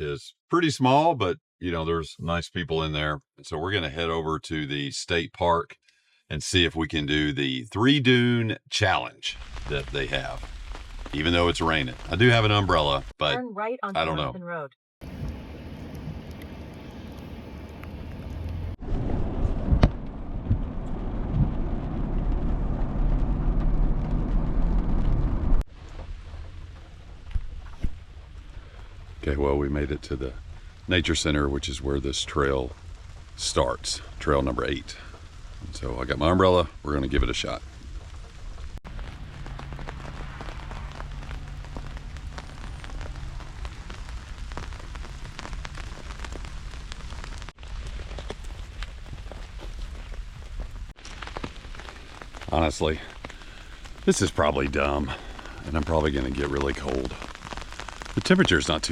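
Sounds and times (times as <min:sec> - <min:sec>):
rain on umbrella: 0:09.4 - 0:13.4, 0:15.0 - 0:58.9
low steady hum: 0:15.0 - 0:50.9
car engine and road rumble: 0:15.0 - 0:58.9.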